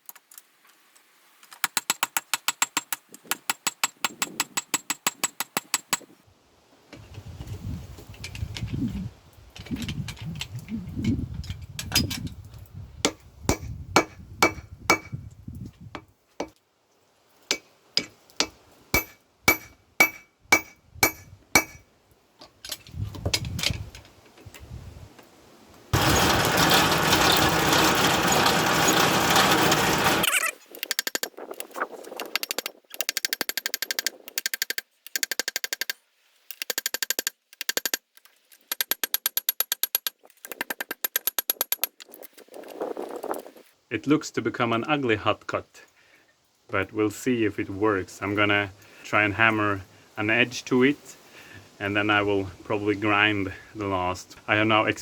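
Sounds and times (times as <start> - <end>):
hammer striking steel on anvil: 13.1 - 15.1, 17.5 - 21.8.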